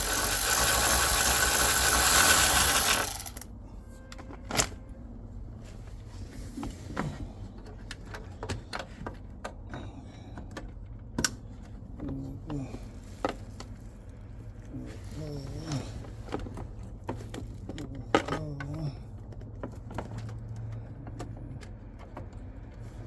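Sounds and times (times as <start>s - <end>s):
loud steady mechanical noise: 0.0s - 3.5s.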